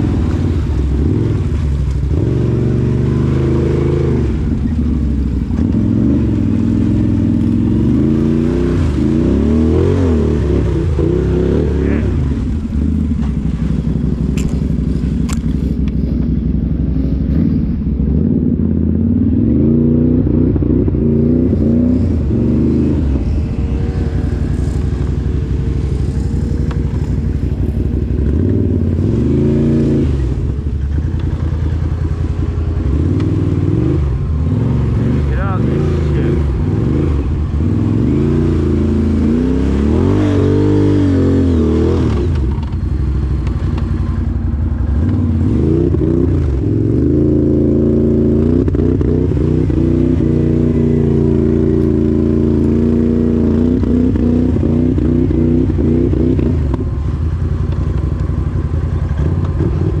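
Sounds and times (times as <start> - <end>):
off-road vehicle engine revving: 0.0 - 60.0
clatter over rough ground: 11.8 - 17.8, 39.2 - 60.0.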